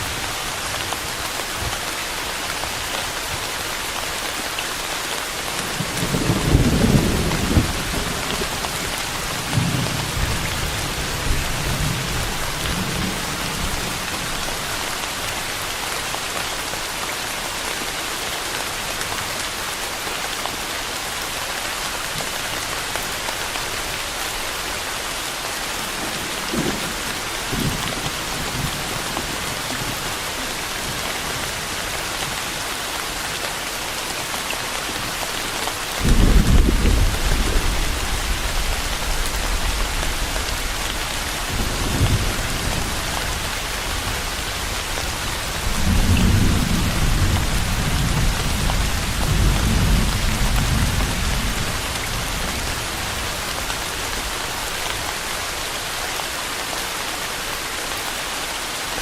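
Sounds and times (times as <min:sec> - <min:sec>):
heavy rain: 0:00.0 - 0:59.0
distant thunder rumbling: 0:05.7 - 0:13.7, 0:36.0 - 0:43.1.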